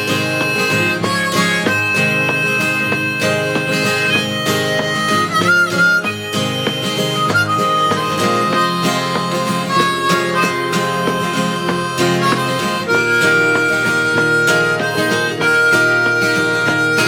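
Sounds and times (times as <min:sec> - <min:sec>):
acoustic guitar accompaniment: 0:00.0 - 0:17.0
harmonica melody: 0:00.0 - 0:17.0.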